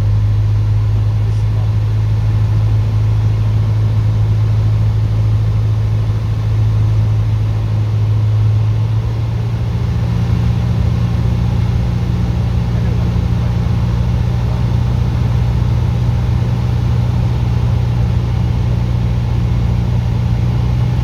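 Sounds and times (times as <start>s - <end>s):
aircraft piston engine running: 9.1s - 21.0s.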